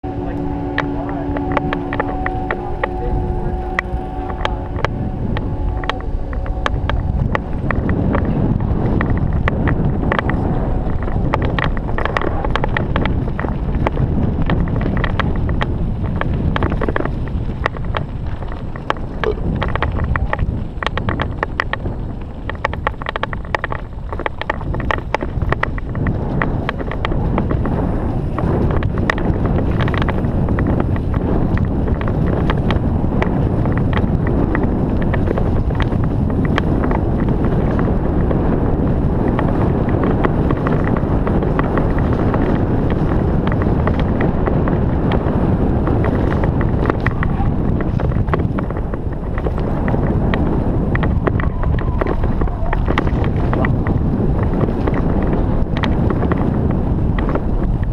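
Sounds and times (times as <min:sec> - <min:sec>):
wind rushing over microphone: 0:00.0 - 0:57.9
bike clicks and rattles: 0:00.2 - 0:57.9.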